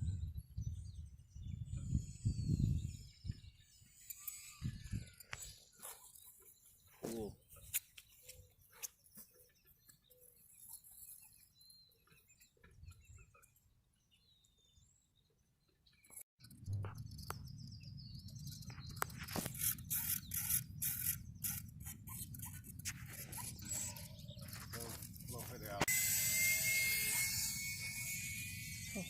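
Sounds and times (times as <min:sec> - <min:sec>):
wind rumble on microphone: 0:00.0 - 0:03.6, 0:04.6 - 0:05.2
faint chirps: 0:01.6 - 0:13.6, 0:15.9 - 0:25.9, 0:26.6 - 0:29.0.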